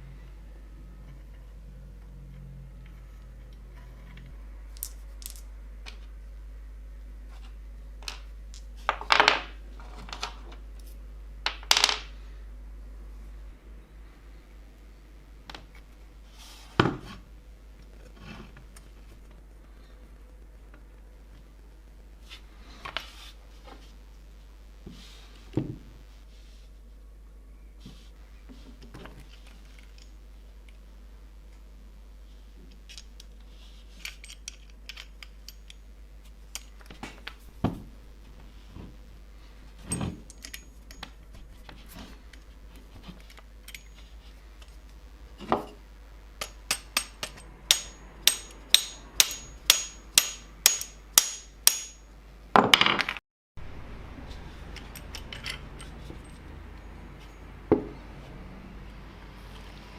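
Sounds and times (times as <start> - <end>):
hammer tapping metal: 46.4 - 52.1
faint high ringing: 53.6 - 58.1.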